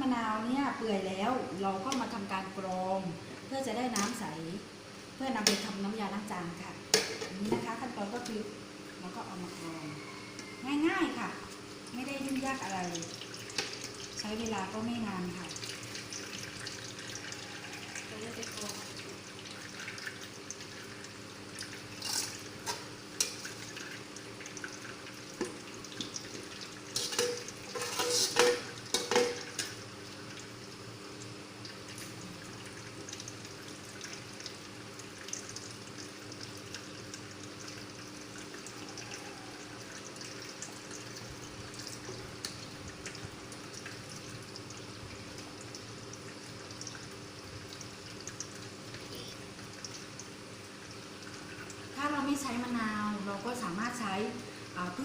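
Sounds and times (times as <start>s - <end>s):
liquid pouring and dripping: 10.0s - 52.7s
utensils clattering: 27.0s - 29.7s.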